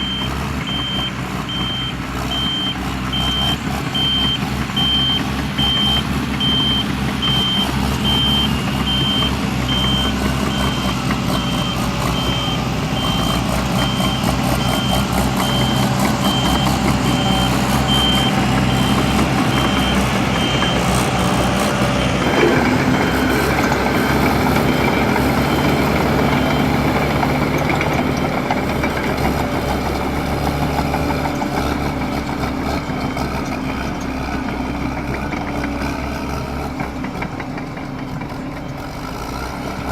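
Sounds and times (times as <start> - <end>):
reversing alarm beeping: 0.0 - 29.4
diesel engine running: 0.0 - 39.9.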